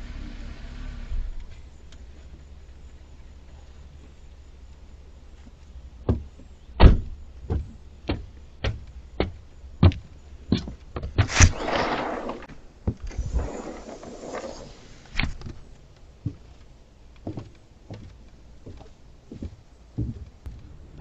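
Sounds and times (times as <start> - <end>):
scraping rustling noise: 11.2 - 15.6.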